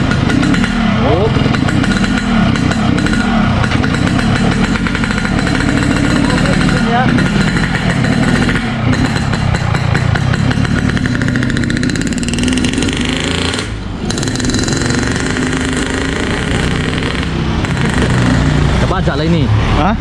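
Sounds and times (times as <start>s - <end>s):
two-stroke motorcycle engine: 0.0s - 20.0s.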